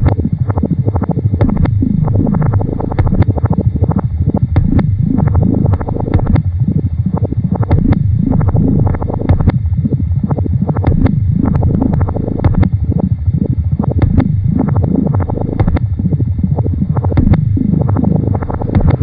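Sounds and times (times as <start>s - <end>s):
rapid low electronic pulsing: 0.0s - 19.0s
sharp electronic clicks: 1.4s - 3.4s.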